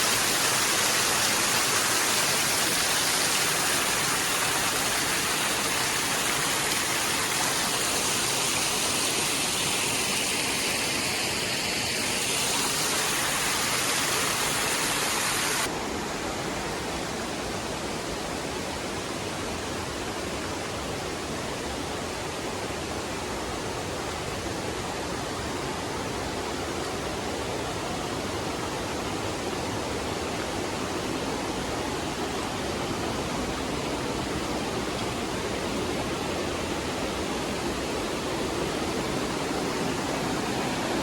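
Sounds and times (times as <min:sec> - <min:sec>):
rushing water in gorge: 0:00.0 - 0:41.0.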